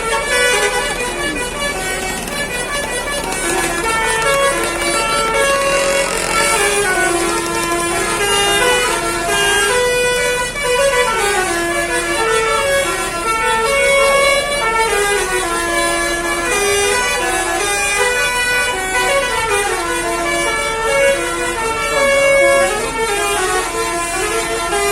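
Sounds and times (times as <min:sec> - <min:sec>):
musical air horn playing tune: 0:00.0 - 0:24.9.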